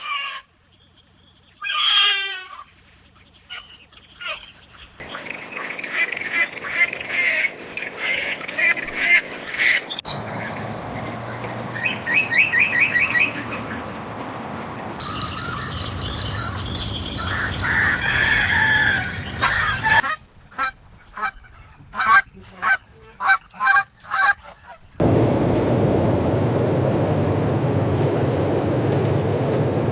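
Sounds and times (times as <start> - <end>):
bird calls: 0.0 - 14.1, 15.0 - 20.0
steady rushing noise: 25.0 - 29.9.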